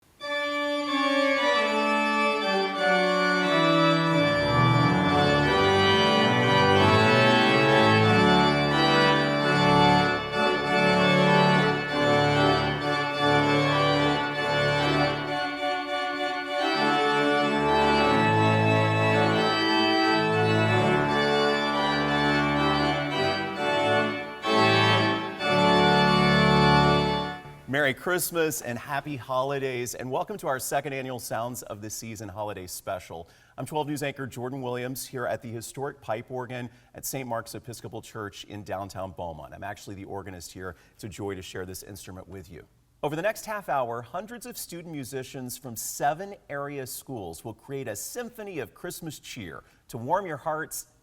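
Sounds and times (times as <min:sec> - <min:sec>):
pipe organ chords: 0:00.0 - 0:28.4
deep organ pedal bass: 0:00.3 - 0:27.7.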